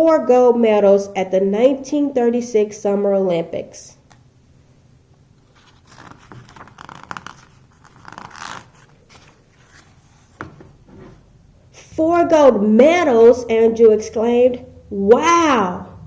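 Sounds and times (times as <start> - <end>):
paper page rustling: 5.4 - 11.2.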